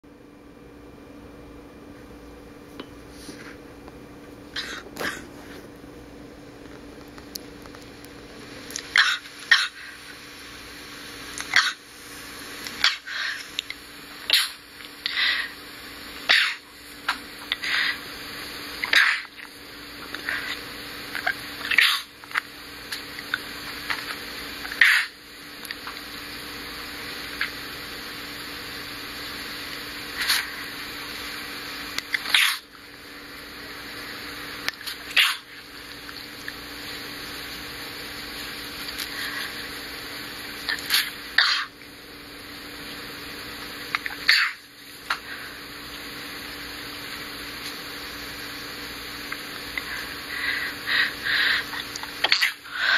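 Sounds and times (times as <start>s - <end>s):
person sneezing: 4.5s - 5.4s, 16.3s - 16.7s.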